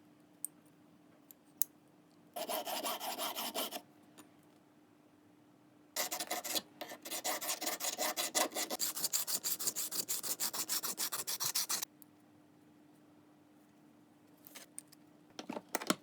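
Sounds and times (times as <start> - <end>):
hand tool scraping metal: 6.0 - 11.8.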